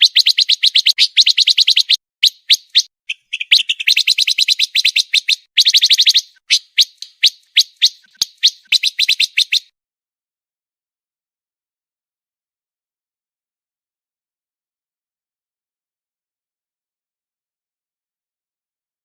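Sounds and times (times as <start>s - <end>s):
songbird singing rapid high notes: 0.0s - 9.7s.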